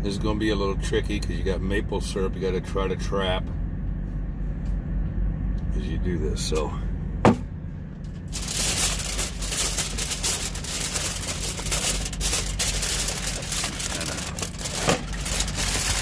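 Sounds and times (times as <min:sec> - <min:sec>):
steady low hum: 0:00.0 - 0:16.0
aluminium foil crinkling: 0:08.1 - 0:16.0.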